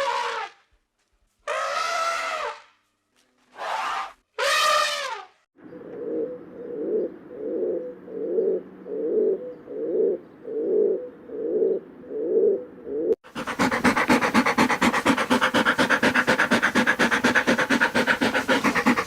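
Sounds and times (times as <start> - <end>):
pigeon cooing: 5.8 - 19.0.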